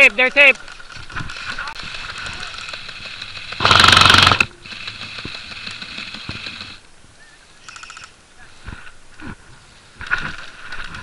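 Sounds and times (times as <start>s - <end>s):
faint mechanical rattle: 0.7s - 6.8s
airsoft gun full-auto burst: 2.5s - 6.8s.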